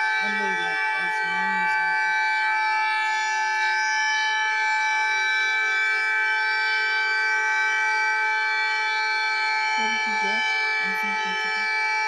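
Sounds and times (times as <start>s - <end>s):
alarm tone chord: 0.0s - 2.2s, 9.8s - 12.0s.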